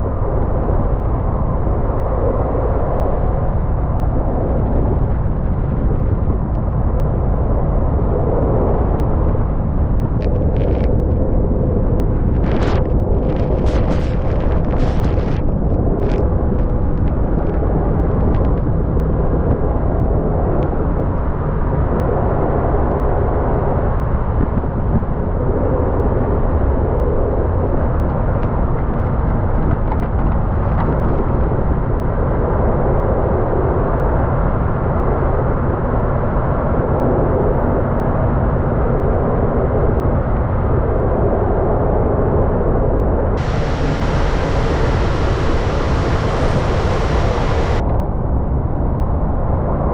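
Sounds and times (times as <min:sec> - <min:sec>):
bright hiss: 0:43.4 - 0:47.8
truck engine and road rumble: 0:43.4 - 0:48.6.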